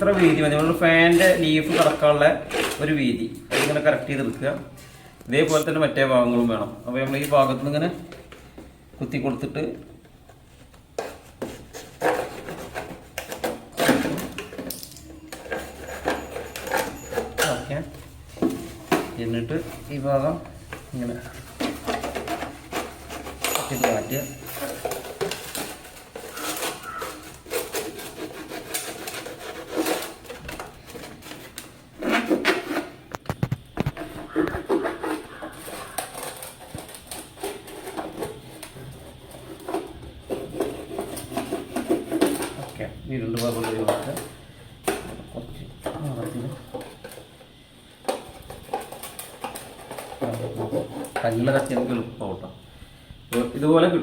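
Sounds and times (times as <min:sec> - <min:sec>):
knife cutting plastic bottle: 0:00.0 - 0:04.5, 0:11.0 - 0:17.8, 0:18.4 - 0:42.8.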